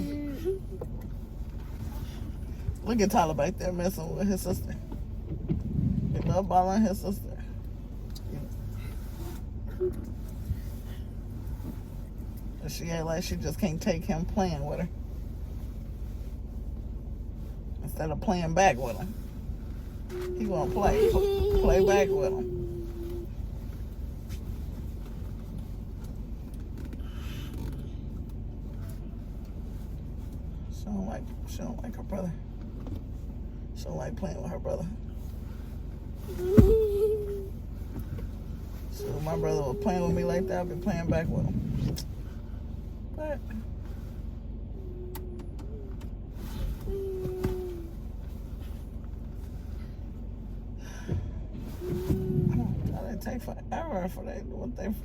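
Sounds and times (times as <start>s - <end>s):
car engine idling: 0.0s - 55.0s
faint clicks and rustles: 7.4s - 17.8s, 18.8s - 31.4s.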